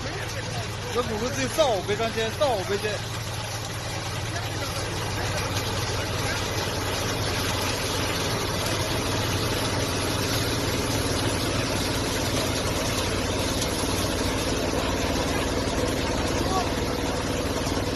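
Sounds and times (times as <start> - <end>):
harvesting machine engine running: 0.0 - 17.9.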